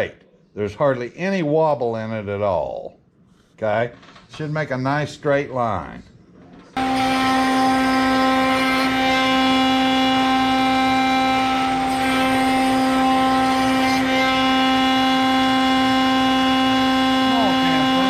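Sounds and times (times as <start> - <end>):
electric power tool whining: 6.8 - 18.0.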